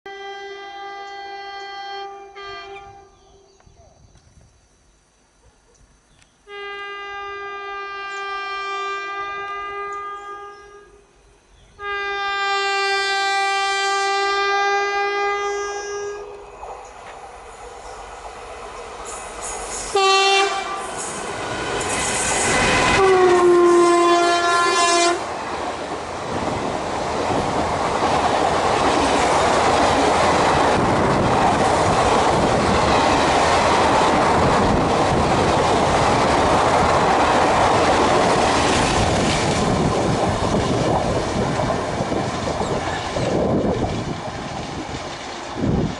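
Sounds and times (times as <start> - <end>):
locomotive air horn blasts: 0.1 - 3.2, 6.5 - 11.1, 11.8 - 16.4, 19.7 - 21.2, 22.7 - 25.3
train wheels rushing on rails: 16.2 - 45.9.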